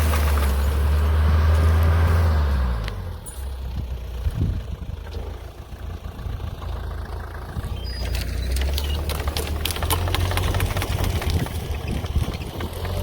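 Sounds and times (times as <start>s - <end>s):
tiller engine idling: 0.0s - 13.0s
rapid clatter of clicks and knocks: 8.0s - 13.0s.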